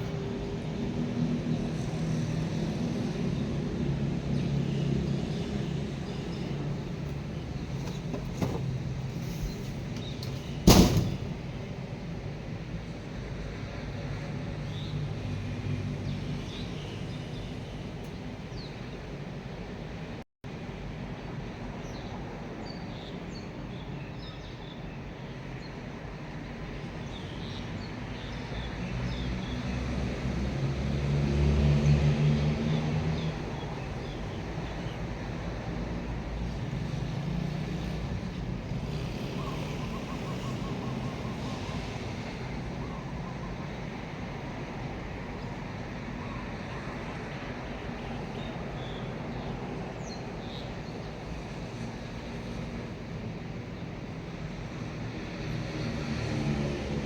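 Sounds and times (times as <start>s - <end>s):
outdoor background noise: 0.0s - 57.0s
vehicle engine passing by: 29.1s - 33.7s, 55.4s - 57.0s.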